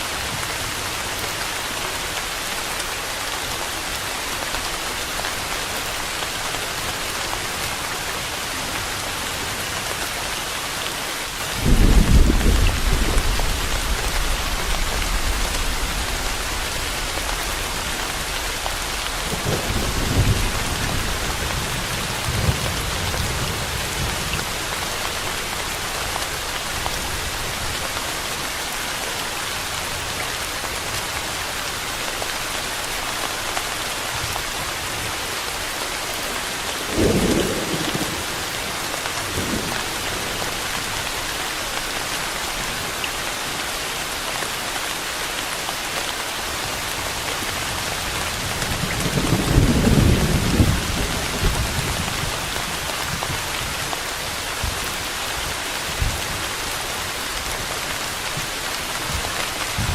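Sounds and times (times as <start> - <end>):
steady rain: 0.0 - 59.9
thunder rumbling: 11.4 - 25.1, 48.4 - 52.8.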